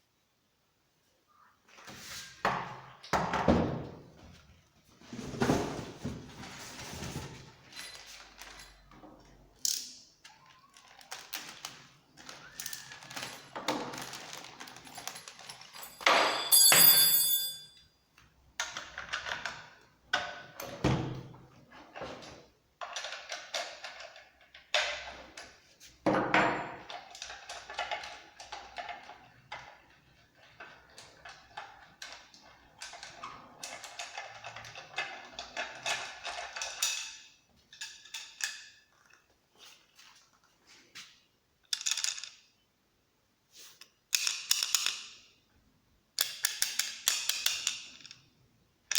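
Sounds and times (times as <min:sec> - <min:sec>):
packaging rustling and scraping: 0:04.9 - 0:08.9, 0:10.4 - 0:15.8
loud ringing clink: 0:16.0 - 0:17.9.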